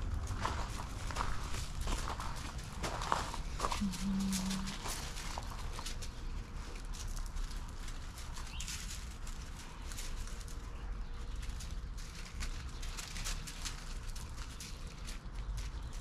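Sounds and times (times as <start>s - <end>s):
footsteps on wet ground: 0.0s - 8.7s
steady low rumble: 0.0s - 16.0s.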